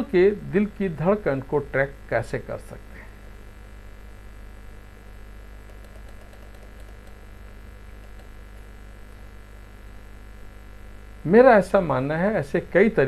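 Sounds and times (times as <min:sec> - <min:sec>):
low electrical hum: 0:00.0 - 0:13.0.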